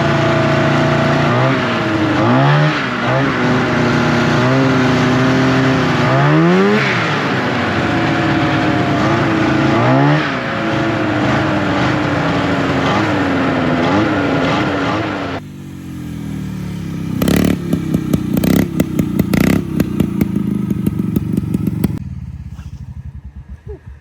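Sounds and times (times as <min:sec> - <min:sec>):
exhaust popping: 0:00.0 - 0:24.0
faint engine puttering: 0:00.0 - 0:24.0
snowmobile engines running: 0:00.0 - 0:24.0.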